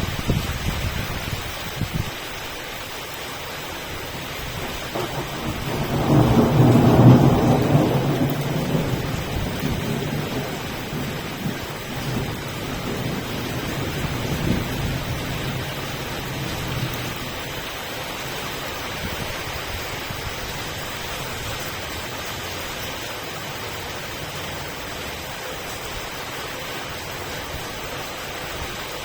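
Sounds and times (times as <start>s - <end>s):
steady rain: 0.0s - 29.0s.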